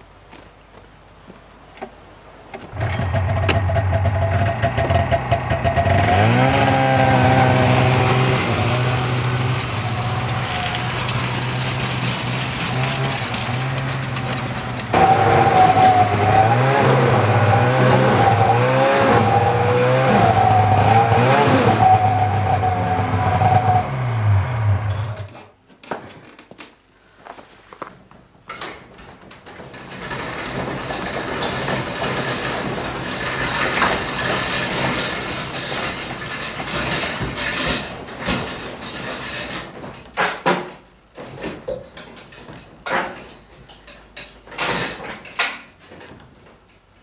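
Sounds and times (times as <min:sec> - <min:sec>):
snowmobile engine revving: 0:02.8 - 0:25.3.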